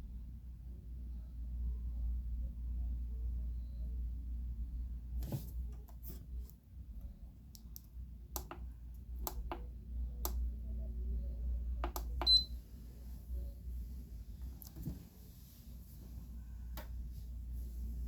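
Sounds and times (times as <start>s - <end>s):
air conditioner humming: 0.0s - 18.0s.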